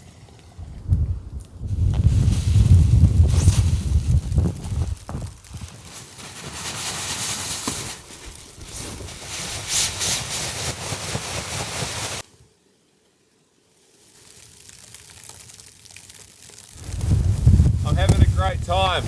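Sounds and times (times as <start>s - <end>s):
wind gusts on microphone: 0.6s - 5.7s, 16.8s - 19.0s
footsteps crunching through snow: 1.7s - 12.2s, 14.0s - 19.0s.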